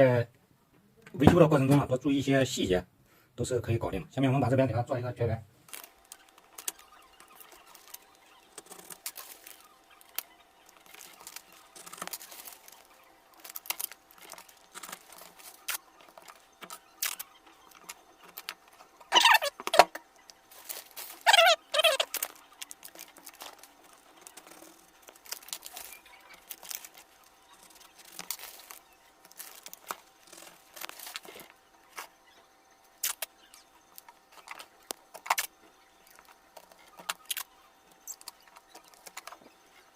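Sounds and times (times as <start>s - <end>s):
insulating material crinkling: 5.5s - 39.9s
squeaky screeches: 19.0s - 19.9s, 20.5s - 31.4s.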